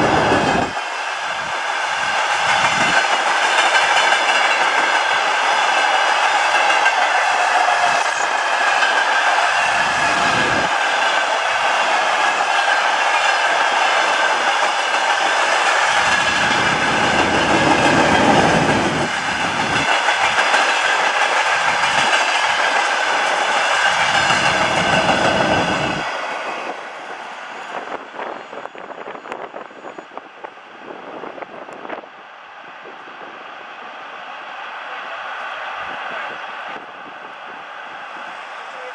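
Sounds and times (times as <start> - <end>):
freight train rattling past: 0.0 - 29.6.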